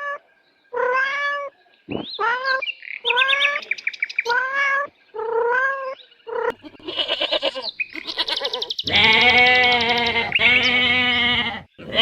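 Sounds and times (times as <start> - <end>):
sheep bleating: 6.5 - 12.0.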